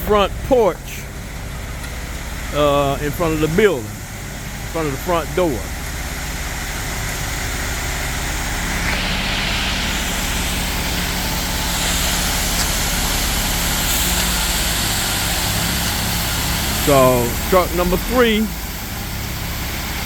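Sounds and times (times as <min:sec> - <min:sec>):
diesel truck engine running: 0:00.0 - 0:20.0
hiss: 0:08.8 - 0:20.0.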